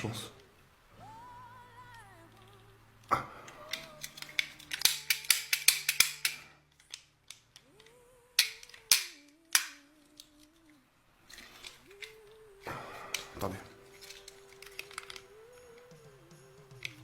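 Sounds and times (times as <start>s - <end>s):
plastic gun parts clicking: 3.5s - 12.4s, 13.1s - 16.0s, 16.8s - 17.0s.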